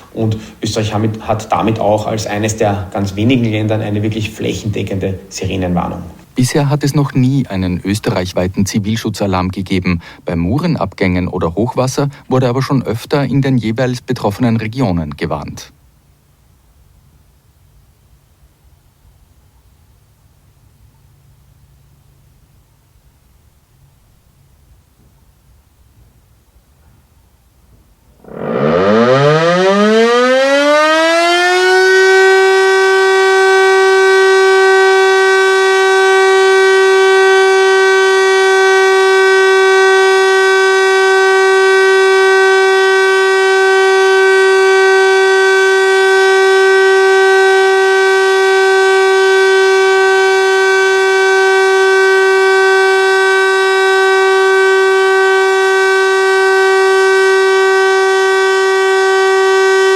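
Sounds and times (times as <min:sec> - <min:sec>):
motor siren spinning up: 0:28.2 - 0:59.9.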